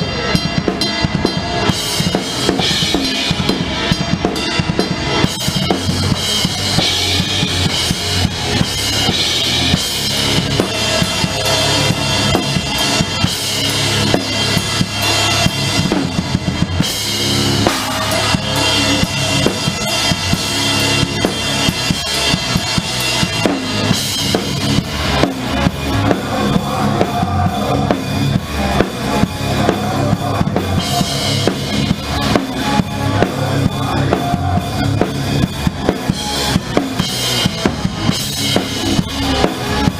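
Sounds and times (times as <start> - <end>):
heavy rock band playing live: 0.0 - 39.9.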